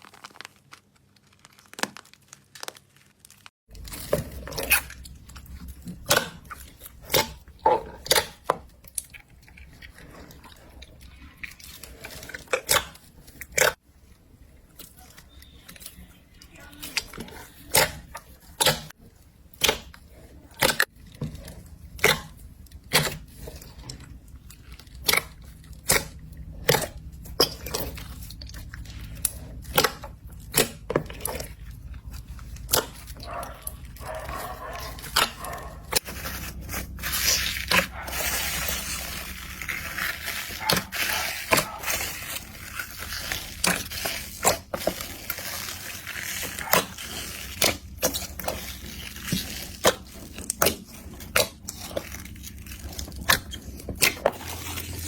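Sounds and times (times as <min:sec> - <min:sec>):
slime squished by hand: 0:19.5 - 0:55.0.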